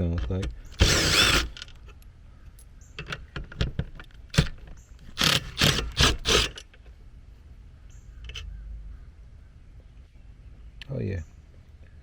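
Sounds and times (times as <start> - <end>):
cordless drill backing out screw: 0.7 - 1.8, 4.3 - 6.7.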